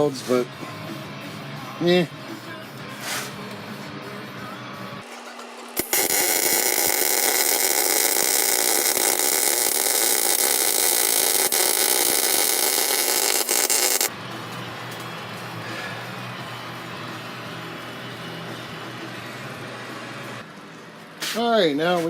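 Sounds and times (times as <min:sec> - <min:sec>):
welding arc crackling hiss: 0:05.6 - 0:14.1.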